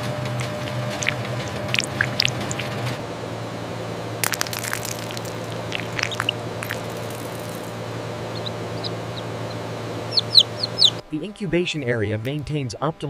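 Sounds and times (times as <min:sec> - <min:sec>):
steady machine hum: 0:00.0 - 0:13.0
clicks and crackles: 0:00.4 - 0:02.9, 0:04.2 - 0:07.8
faint high chirps: 0:01.0 - 0:02.7, 0:04.4 - 0:07.7, 0:08.3 - 0:11.0.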